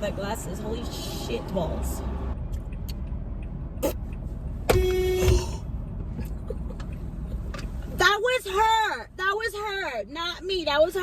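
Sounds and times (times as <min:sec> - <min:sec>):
road noise inside car: 0:00.0 - 0:11.0
car horn honk: 0:04.7 - 0:05.6.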